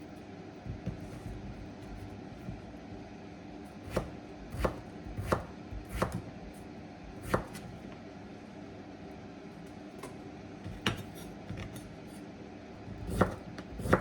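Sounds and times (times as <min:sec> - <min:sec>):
steady low hum: 0:00.0 - 0:14.0
knife chopping on cutting board: 0:00.7 - 0:02.6, 0:03.8 - 0:06.3, 0:07.1 - 0:07.8, 0:10.0 - 0:11.9, 0:12.9 - 0:14.0.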